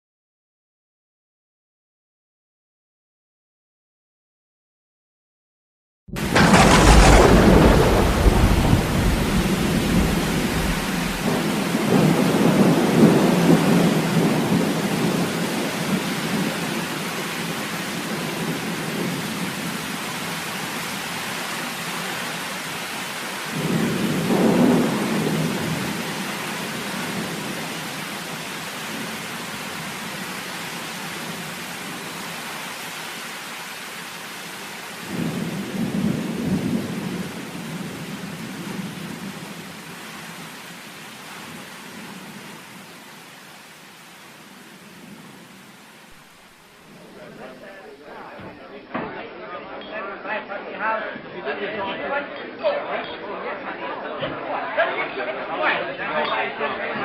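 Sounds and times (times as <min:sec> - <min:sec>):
loud thunderclap: 0:06.1 - 0:17.0, 0:23.6 - 0:26.1, 0:35.1 - 0:39.6
rolling thunder: 0:06.1 - 0:19.7, 0:23.6 - 0:27.6, 0:35.1 - 0:39.6
heavy rain: 0:06.1 - 0:49.0.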